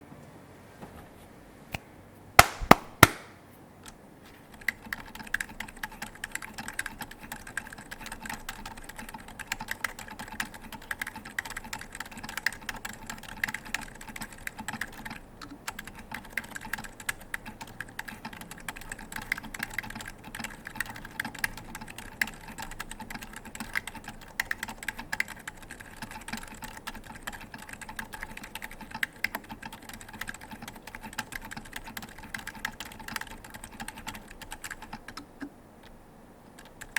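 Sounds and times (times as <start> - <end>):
sharp clicks: 1.8 - 13.9
mechanical keyboard typing: 3.8 - 36.9.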